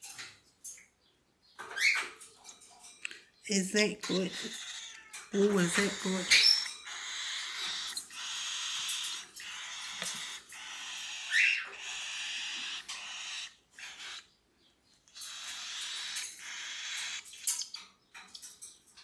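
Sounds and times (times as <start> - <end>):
cockatiel chick begging: 4.3 - 14.3, 15.2 - 17.6.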